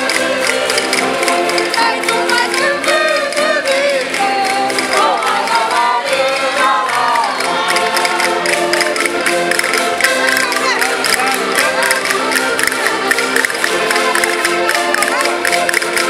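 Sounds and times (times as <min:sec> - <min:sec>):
women singing in a group: 0:00.0 - 0:08.9
button accordions playing chords: 0:00.0 - 0:16.0.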